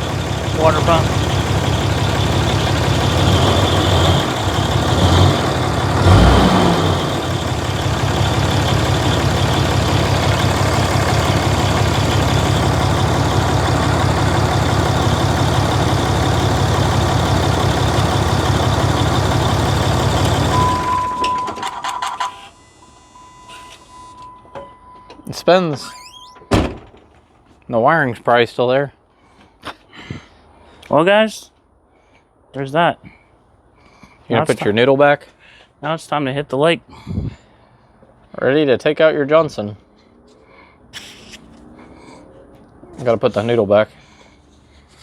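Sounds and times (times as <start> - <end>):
diesel engine idling: 0.0 - 21.4
engine squeal: 0.0 - 26.5.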